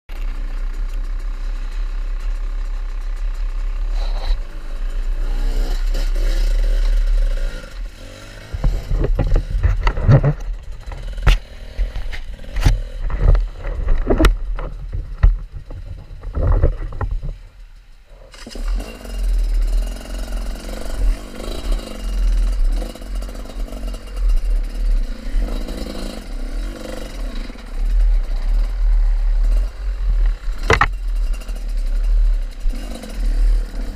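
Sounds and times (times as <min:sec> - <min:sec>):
motorcycle engine running: 0:00.1 - 0:33.9
knocks and clatter: 0:08.5 - 0:17.5, 0:26.8 - 0:33.1.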